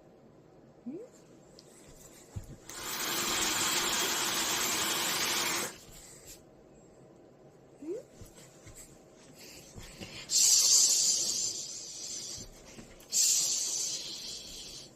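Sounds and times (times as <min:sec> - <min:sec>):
hair dryer blowing: 0:02.6 - 0:05.8.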